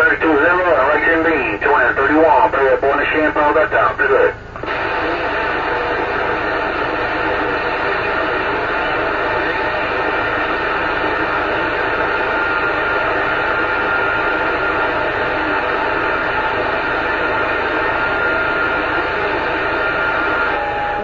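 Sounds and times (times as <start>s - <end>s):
radio static hiss: 0.0s - 21.0s
faint steady whistle: 17.8s - 21.0s.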